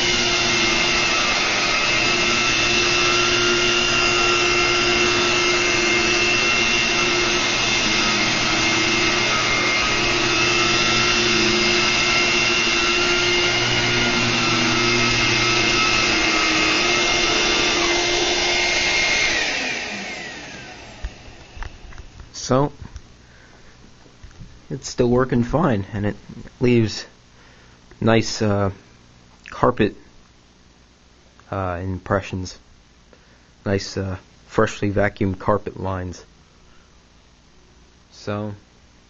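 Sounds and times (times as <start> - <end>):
vacuum cleaner running over carpet: 0.0 - 22.3.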